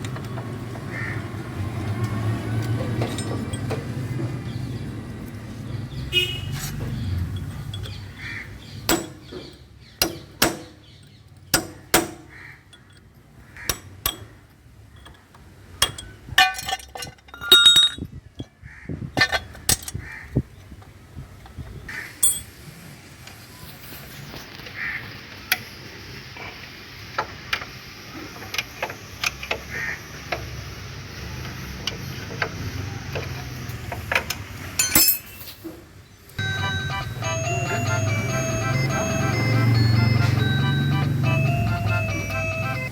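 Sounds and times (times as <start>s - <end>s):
metal tools clinking: 2.8s - 4.1s, 6.6s - 8.1s, 14.9s - 18.6s, 22.2s - 22.6s, 34.2s - 35.8s.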